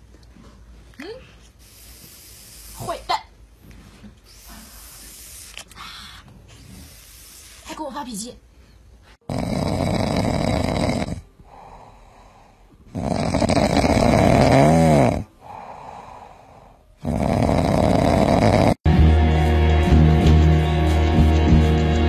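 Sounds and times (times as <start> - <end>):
cat snoring: 9.2 - 18.8.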